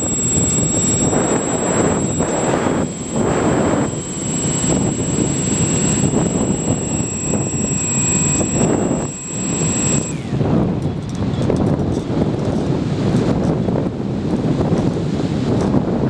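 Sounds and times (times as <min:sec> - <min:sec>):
model plane motor whine: 0:00.0 - 0:11.1
wind rush over microphone: 0:00.0 - 0:16.0.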